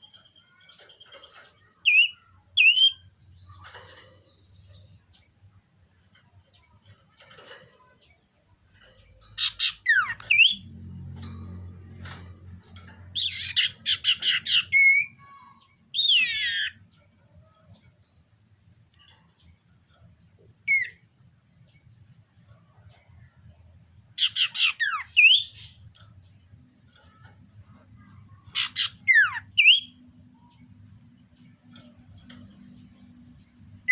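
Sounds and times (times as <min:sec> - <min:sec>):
bird chattering and whistling: 0:00.0 - 0:03.8, 0:09.4 - 0:10.7, 0:13.2 - 0:16.8, 0:20.6 - 0:21.0, 0:24.2 - 0:25.8, 0:28.0 - 0:30.6.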